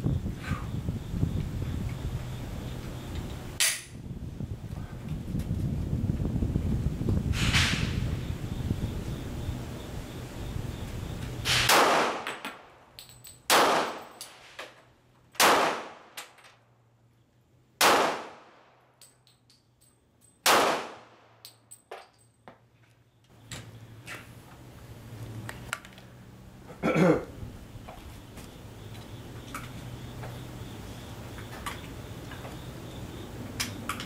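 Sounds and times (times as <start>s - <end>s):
pistol shots: 11.5s - 12.7s, 13.5s - 14.4s, 15.4s - 16.3s, 17.8s - 18.7s, 20.4s - 21.2s.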